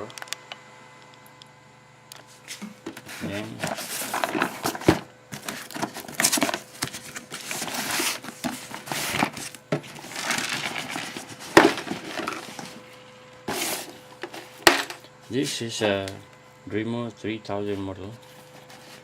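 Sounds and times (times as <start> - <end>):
faint steady hum: 0.0 - 19.0
cardboard packaging rustling: 2.6 - 15.0, 18.2 - 19.0.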